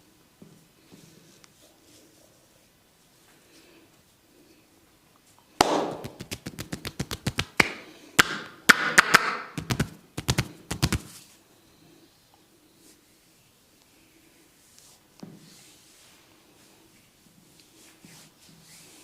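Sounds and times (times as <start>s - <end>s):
sharp cracks and taps: 5.6s - 11.1s
hands rubbing scalp: 5.9s - 7.7s, 9.6s - 11.2s.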